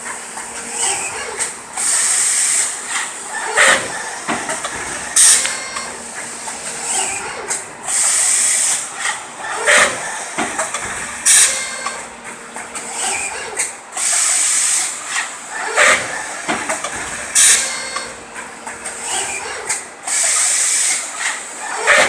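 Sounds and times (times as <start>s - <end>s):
compressed air hissing: 0.8s - 10.1s, 11.2s - 11.7s, 14.0s - 15.2s, 17.2s - 17.9s, 20.1s - 21.1s.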